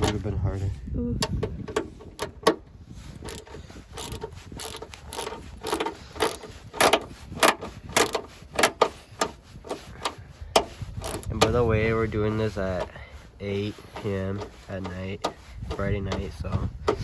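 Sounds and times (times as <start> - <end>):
hand ratchet clicking: 3.2 - 11.6, 13.7 - 17.0.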